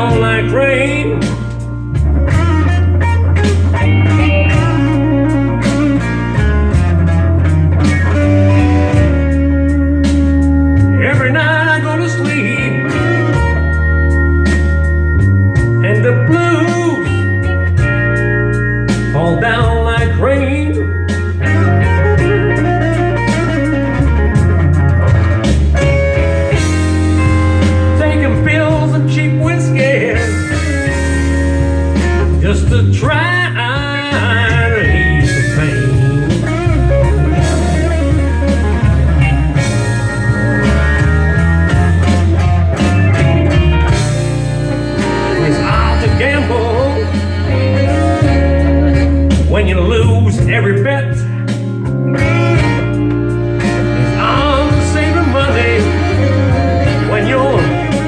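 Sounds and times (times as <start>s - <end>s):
drums: 0.0s - 58.0s
electric guitar bent notes: 0.0s - 58.0s
sustained bass: 0.0s - 58.0s.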